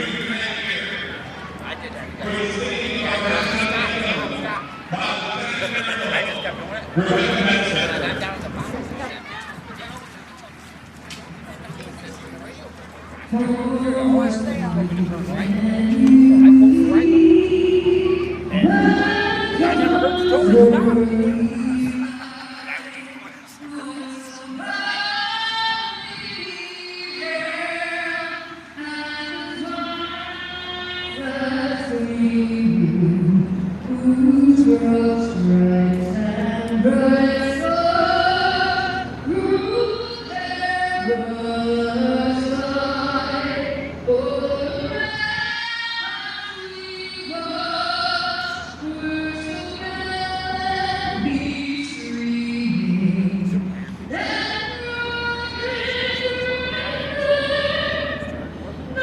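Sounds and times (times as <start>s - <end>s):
woman singing long held notes: 13.3s - 22.7s, 23.6s - 58.4s.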